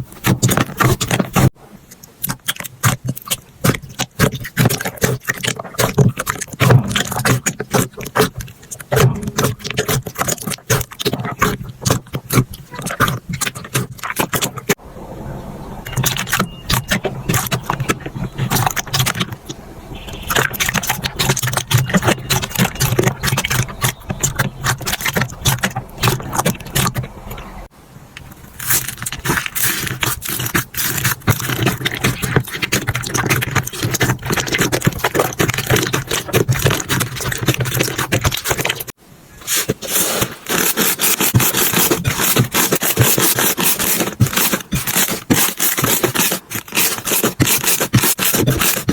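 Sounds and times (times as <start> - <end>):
slime crackling and clicking: 20.2 - 27.5.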